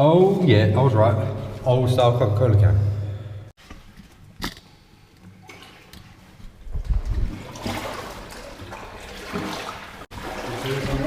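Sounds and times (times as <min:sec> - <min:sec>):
footsteps wading through water: 0:05.2 - 0:11.0.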